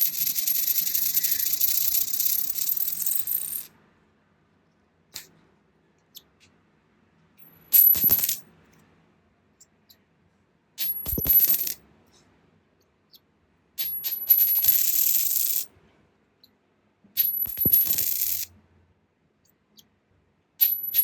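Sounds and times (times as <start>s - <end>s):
coin dropping and spinning: 0.0s - 3.7s, 7.6s - 8.4s, 10.8s - 11.8s, 13.8s - 15.7s, 17.2s - 18.5s, 20.6s - 21.0s.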